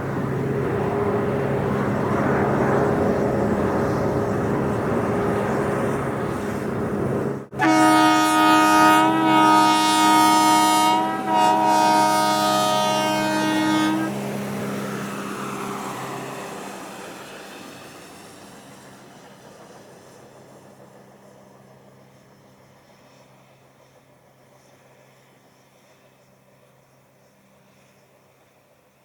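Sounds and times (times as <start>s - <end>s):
train rumble: 0.0s - 29.0s
train horn chord blasts: 7.5s - 16.0s.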